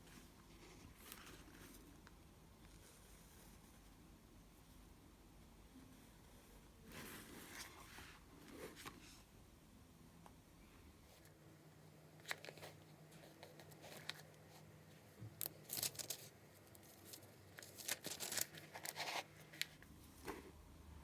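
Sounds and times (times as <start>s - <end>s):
book pages rustling: 0.5s - 1.9s, 12.2s - 20.4s.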